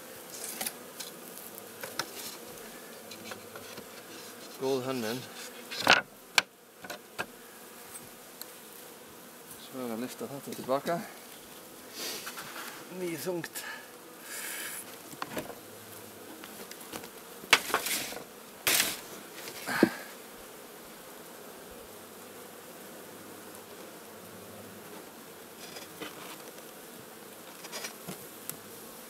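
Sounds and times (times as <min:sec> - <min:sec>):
bees buzzing at a hive: 0:00.0 - 0:29.0
wooden knocks and scrapes: 0:03.1 - 0:04.6, 0:05.4 - 0:07.3, 0:16.9 - 0:20.0.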